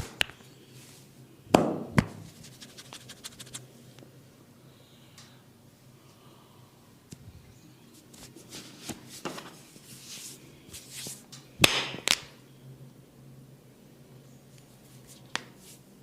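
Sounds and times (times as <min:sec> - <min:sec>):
hands rubbing skin and hair: 0:02.0 - 0:03.7, 0:08.0 - 0:11.3, 0:14.6 - 0:15.9
sharp smacks: 0:11.6 - 0:12.3.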